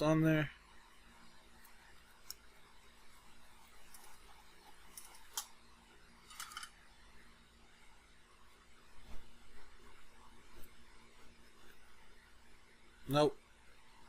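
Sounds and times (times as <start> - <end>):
small metal tools clicking: 6.3 - 6.7.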